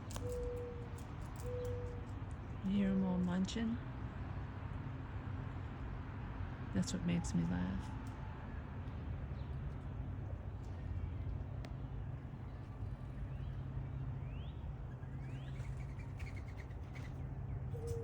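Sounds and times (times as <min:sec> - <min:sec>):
small birds chirping: 0:08.8 - 0:18.0.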